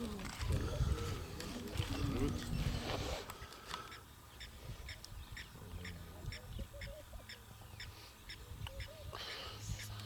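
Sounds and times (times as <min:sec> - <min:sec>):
faint bird-like animal calls: 0:03.9 - 0:10.0.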